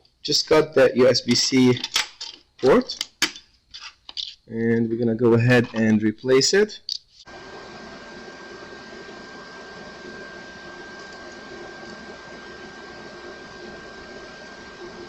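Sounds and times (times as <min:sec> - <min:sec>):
thin steady whine: 0:07.2 - 0:15.0
hot air station blowing: 0:07.3 - 0:15.0.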